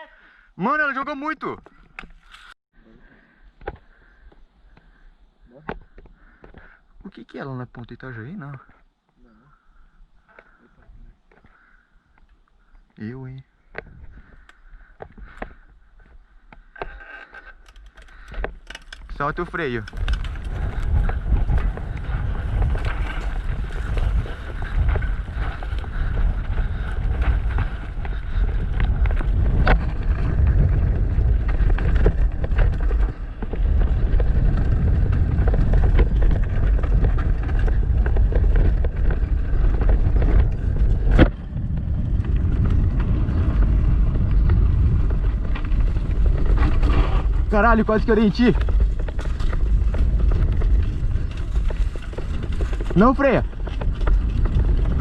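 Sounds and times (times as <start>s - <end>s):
bike frame rattle: 16.8s - 43.4s
tyre rumble: 18.1s - 55.0s
wind buffeting microphone: 18.1s - 55.0s.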